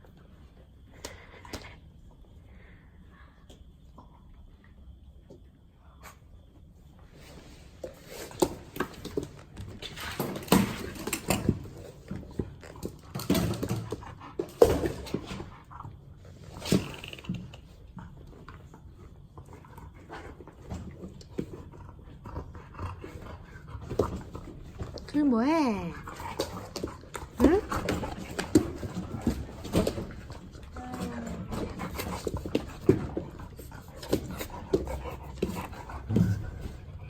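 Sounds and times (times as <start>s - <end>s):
dogs growling and whining: 25.9s - 37.0s.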